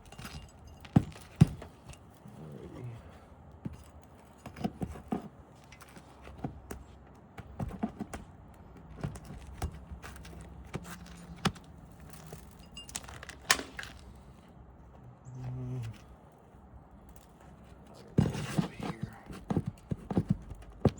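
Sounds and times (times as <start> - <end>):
tools knocking on roof shingles: 0.0 - 2.0, 6.0 - 13.9, 18.1 - 20.9.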